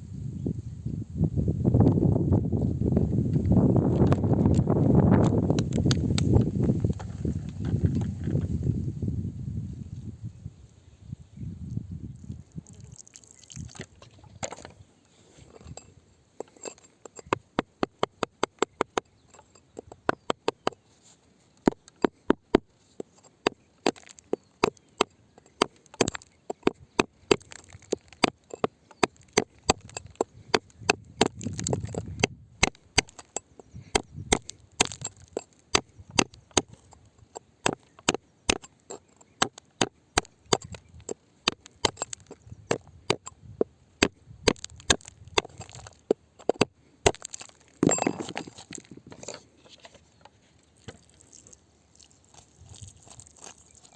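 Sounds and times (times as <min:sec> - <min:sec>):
hand tool striking rock: 0:15.5 - 0:20.8, 0:21.6 - 0:49.4, 0:50.8 - 0:53.9.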